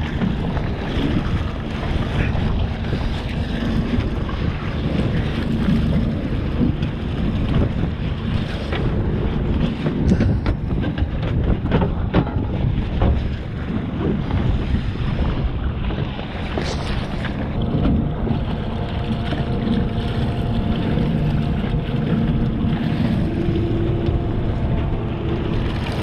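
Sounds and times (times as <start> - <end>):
boat engine running: 0.0 - 26.0
wind buffeting microphone: 0.0 - 26.0
sharp knocks and clatters: 10.0 - 13.4.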